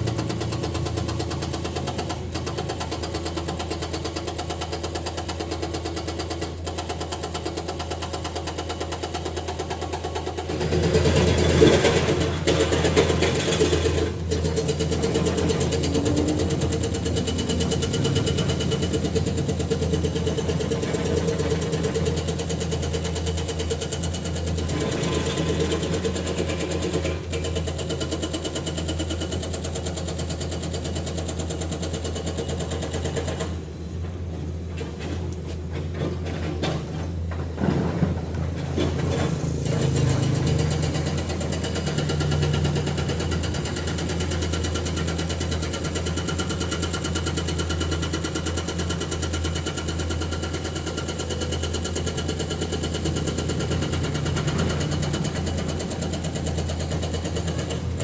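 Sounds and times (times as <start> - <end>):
diesel engine idling: 14.0 - 24.5.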